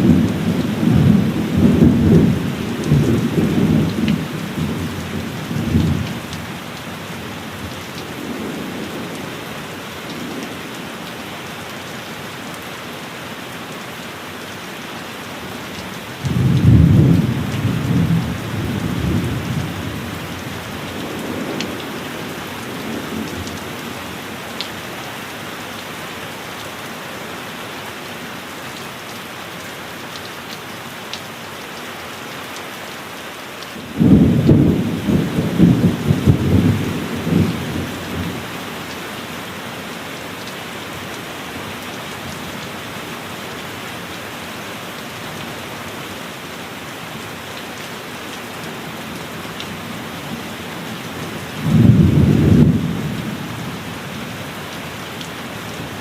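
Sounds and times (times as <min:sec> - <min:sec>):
heavy rain falling: 0:00.0 - 0:56.0
rolling thunder: 0:34.0 - 0:38.4, 0:51.6 - 0:53.2.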